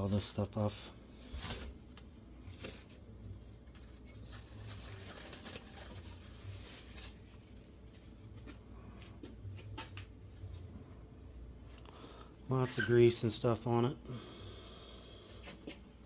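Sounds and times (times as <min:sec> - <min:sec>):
low steady hum: 0:00.0 - 0:16.0
packing material rustling: 0:01.2 - 0:08.3.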